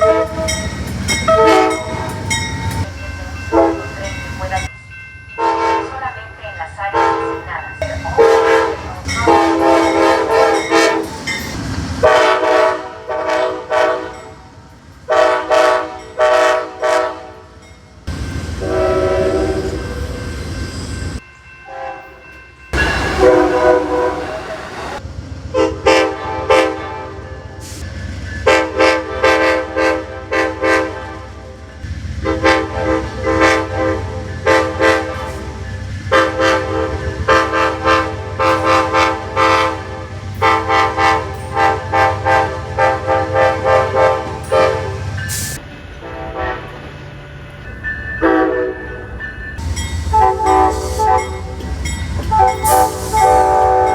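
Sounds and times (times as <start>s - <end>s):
locomotive air horn blasts: 0.0s - 0.6s, 1.3s - 2.3s, 3.5s - 4.0s, 5.4s - 5.9s, 8.2s - 11.2s, 12.0s - 14.4s, 15.1s - 17.5s, 18.6s - 20.2s, 22.8s - 24.6s, 25.6s - 27.8s, 28.5s - 31.6s, 32.2s - 46.9s, 48.2s - 48.8s, 49.7s - 53.9s
rolling train rumble: 0.0s - 53.9s.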